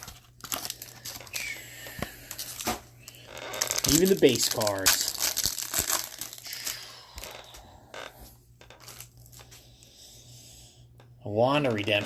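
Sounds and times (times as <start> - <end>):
trading cards rustling: 0.0 - 7.4
low steady hum: 0.0 - 12.0.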